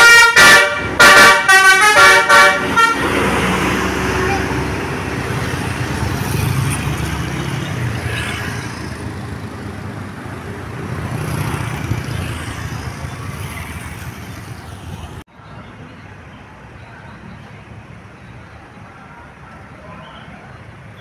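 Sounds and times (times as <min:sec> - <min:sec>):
bus engine running: 0:00.0 - 0:15.3
traffic noise: 0:00.0 - 0:21.0.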